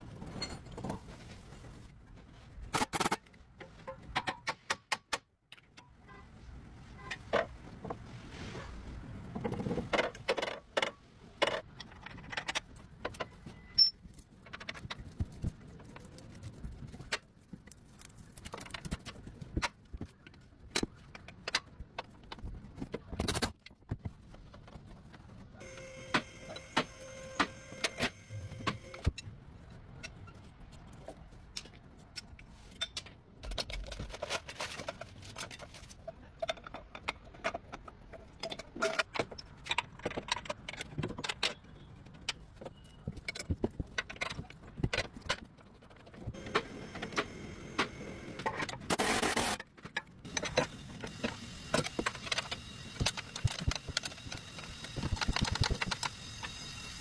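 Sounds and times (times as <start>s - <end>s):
metal tools clinking and knocking: 0.2s - 1.0s.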